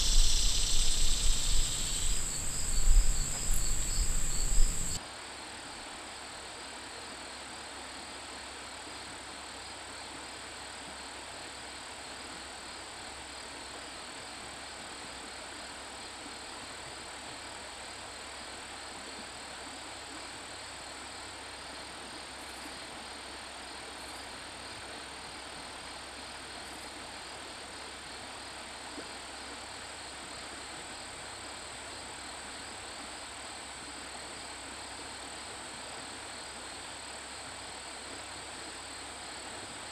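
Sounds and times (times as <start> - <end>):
faint ticks: 0.0 - 5.0
high-pitched insect drone: 0.0 - 5.0
outdoor hiss: 0.0 - 39.9.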